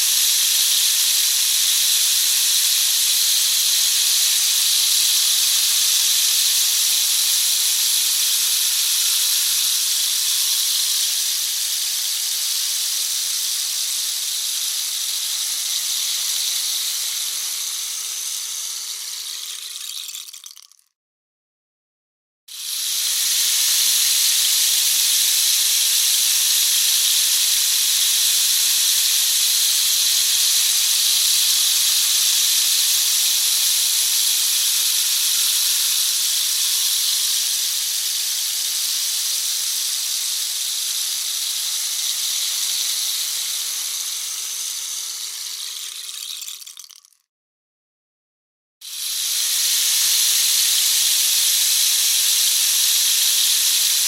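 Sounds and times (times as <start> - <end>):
rain stick cascade: 0.0 - 2.0, 2.6 - 20.9, 34.7 - 47.2, 48.9 - 54.0.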